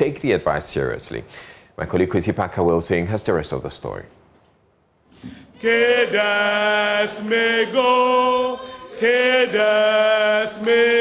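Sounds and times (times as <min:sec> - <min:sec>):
men singing a chant: 0:05.2 - 0:11.0.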